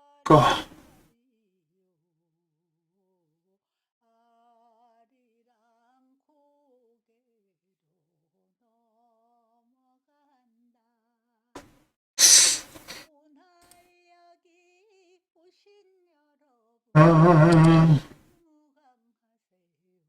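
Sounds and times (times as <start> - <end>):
man humming softly: 0.3 - 0.8, 17.0 - 18.1
puff of breath: 12.2 - 13.0.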